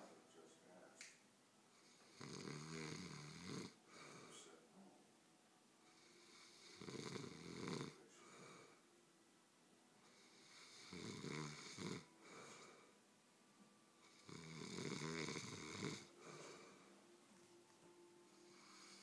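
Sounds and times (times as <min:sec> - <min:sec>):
person snoring: 0:01.8 - 0:04.4, 0:06.0 - 0:08.8, 0:10.1 - 0:12.9, 0:14.0 - 0:16.8, 0:18.3 - 0:19.0.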